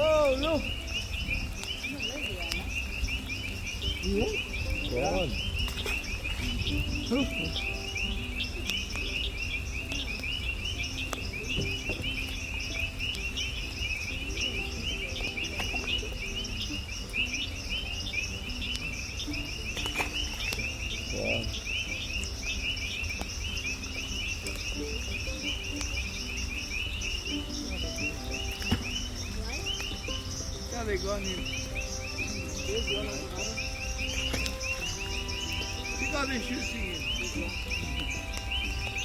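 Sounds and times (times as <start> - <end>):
wind rumble on microphone: 0.0 - 30.7
insects chirping: 0.0 - 39.0.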